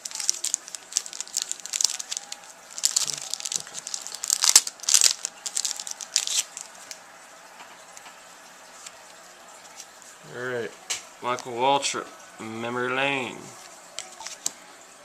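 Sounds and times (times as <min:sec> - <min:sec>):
plastic wrapper crinkling and tearing: 0:00.0 - 0:07.1, 0:14.0 - 0:14.6.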